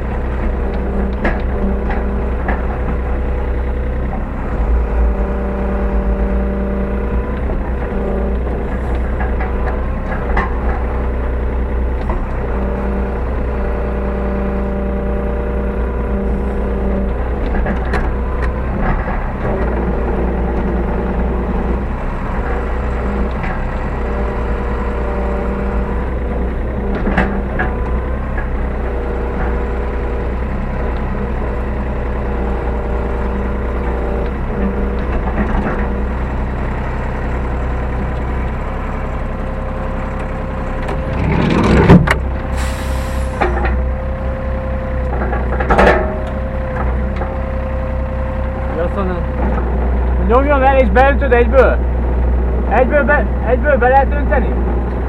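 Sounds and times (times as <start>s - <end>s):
excavator engine running: 0.0s - 55.0s.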